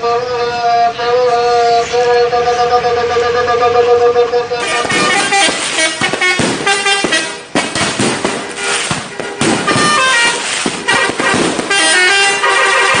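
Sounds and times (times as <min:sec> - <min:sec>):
multi-tone bus air horn: 0:00.0 - 0:13.0
crackling noise: 0:04.6 - 0:13.0.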